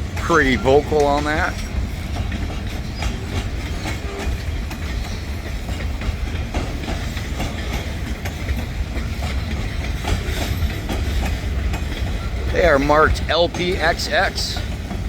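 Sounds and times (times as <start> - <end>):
rumble of train wheels on rails: 0.0 - 15.0
wheels clicking over rail joints: 0.0 - 15.0.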